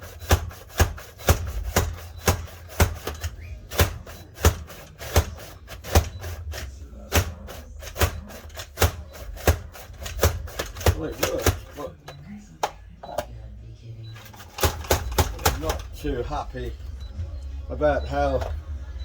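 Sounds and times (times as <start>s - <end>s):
slicer plastic clacks and thuds: 0.0s - 13.2s, 14.2s - 16.1s.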